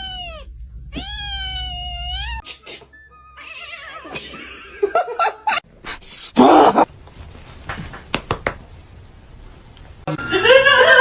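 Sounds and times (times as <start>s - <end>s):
cat meowing: 0.0s - 2.4s, 3.4s - 4.2s
faint wavering cat cries: 0.0s - 2.5s, 3.3s - 4.2s.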